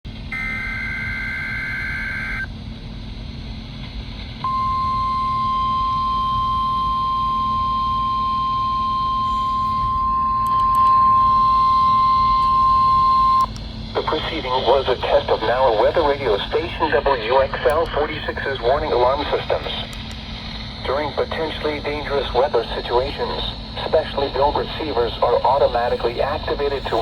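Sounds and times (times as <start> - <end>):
warning alarm tone: 0.3 - 2.5, 4.5 - 13.5
two-tone data burst: 4.5 - 13.5
radio static: 9.3 - 20.0, 20.8 - 27.0.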